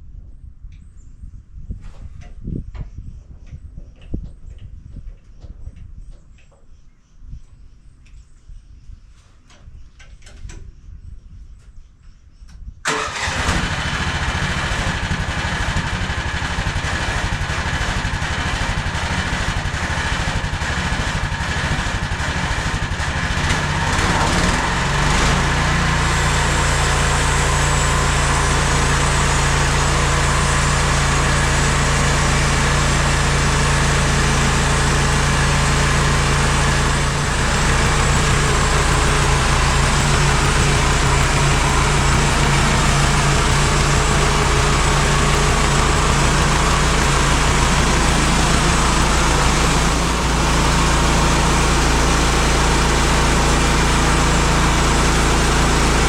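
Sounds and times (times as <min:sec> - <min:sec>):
sawmill engine running: 0:12.9 - 0:56.0.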